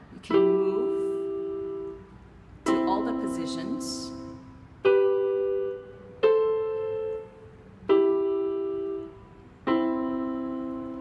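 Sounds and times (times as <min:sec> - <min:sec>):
electronic keyboard chords: 0:00.0 - 0:11.0.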